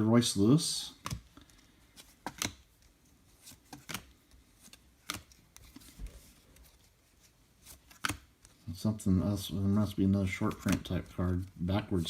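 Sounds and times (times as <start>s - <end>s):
trading cards clicking and slapping: 0.9s - 6.0s, 7.7s - 8.6s, 10.4s - 11.2s.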